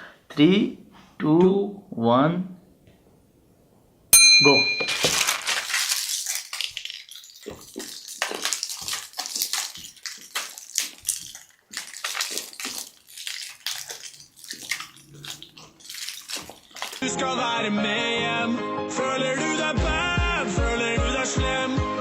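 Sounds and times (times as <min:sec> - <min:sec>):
plastic packets crinkling: 0:04.5 - 0:17.1
crunching of snacks being eaten: 0:04.8 - 0:17.1.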